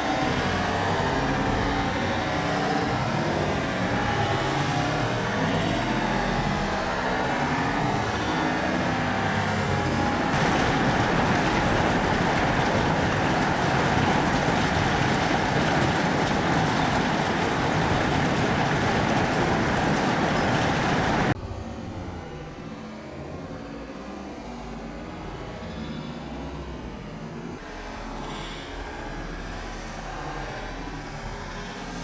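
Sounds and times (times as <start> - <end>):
hail clattering: 9.9 - 21.4.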